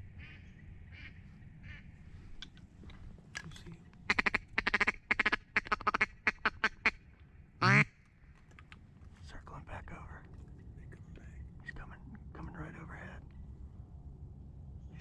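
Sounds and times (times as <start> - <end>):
duck quacking: 4.1 - 7.0, 7.6 - 7.9.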